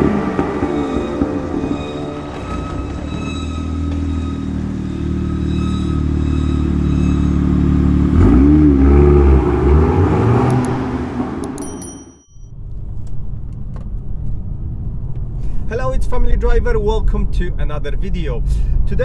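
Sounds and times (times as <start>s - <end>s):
car engine revving: 0.0s - 11.7s.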